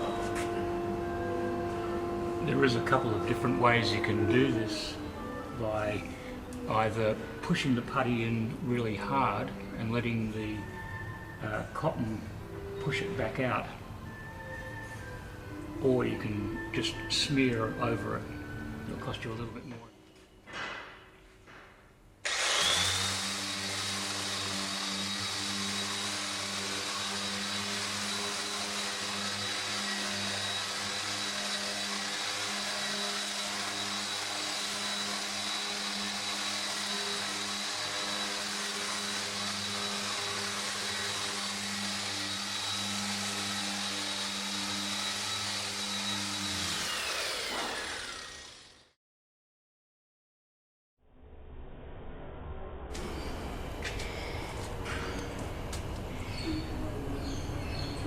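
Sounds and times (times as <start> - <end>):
electric sander whining: 0.0 - 11.6, 22.2 - 48.9.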